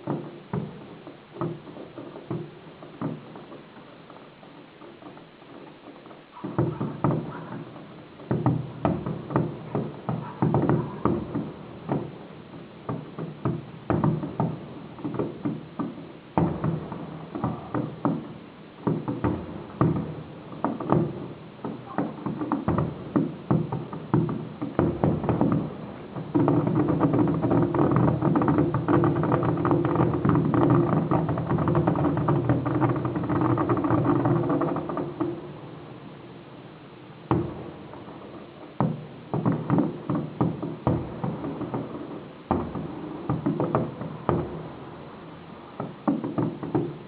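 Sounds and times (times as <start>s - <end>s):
fireworks exploding: 0.0s - 47.0s.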